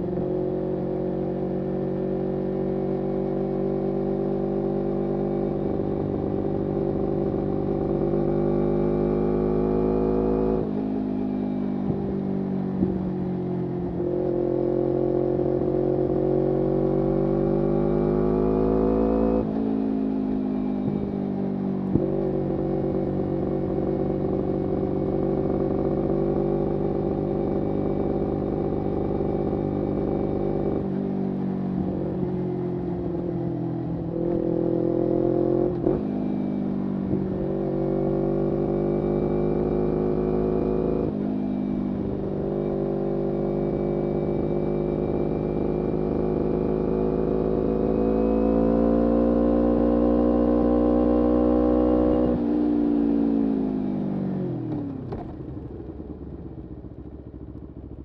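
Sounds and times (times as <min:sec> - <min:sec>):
motorcycle engine revving: 0:21.8 - 0:56.2.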